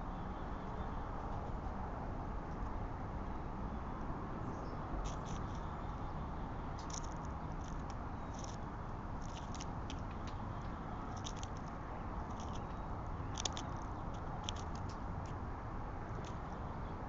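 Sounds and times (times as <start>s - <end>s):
small animal gnawing nuts: 5.0s - 5.8s, 6.7s - 15.4s, 16.0s - 16.6s.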